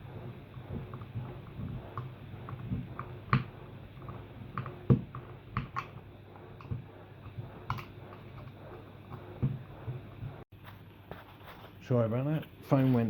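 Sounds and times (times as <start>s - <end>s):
plastic clicks and knocks: 0.7s - 6.0s.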